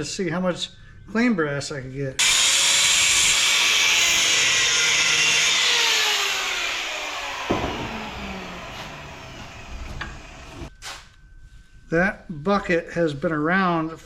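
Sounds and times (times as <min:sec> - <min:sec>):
angle grinder cutting metal: 0:02.2 - 0:10.7
knock: 0:07.5 - 0:10.4.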